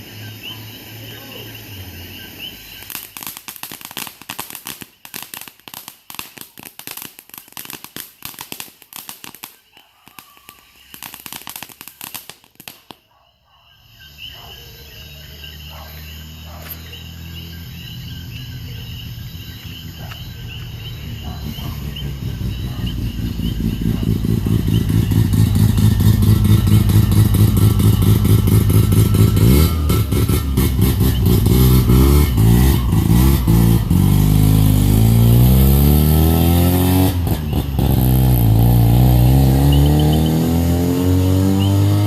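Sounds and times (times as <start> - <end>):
fireworks crackling and banging: 0.0 - 13.1, 18.4 - 42.0
low engine hum: 15.1 - 42.0.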